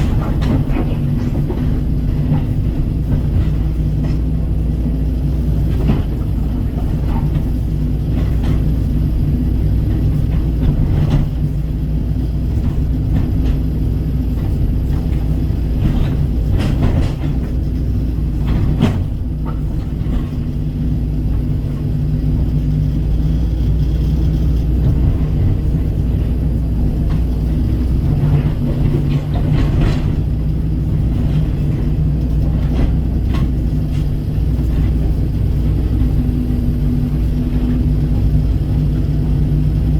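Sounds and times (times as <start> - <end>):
excavator diesel engine running: 0.0 - 39.9.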